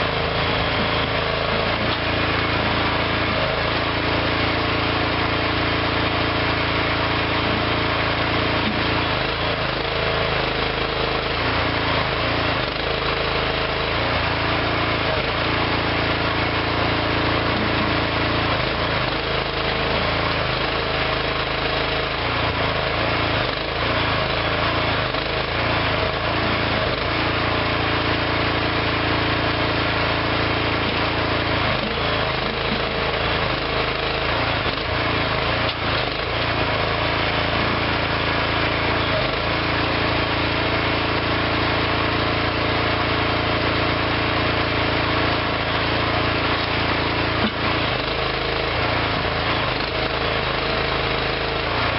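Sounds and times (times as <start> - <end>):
small engine running: 0.0 - 51.9.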